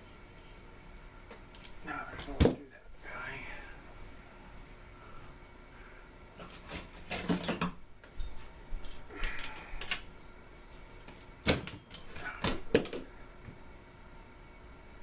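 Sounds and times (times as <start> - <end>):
clicks and knocks of parts and tools: 7.0 - 10.1, 11.0 - 13.1.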